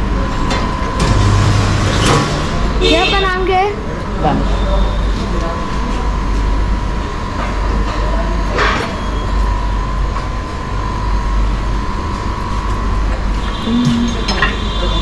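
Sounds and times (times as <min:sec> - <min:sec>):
tyre-changing machine running: 0:00.0 - 0:03.4
sharp metallic clank: 0:01.0 - 0:03.2.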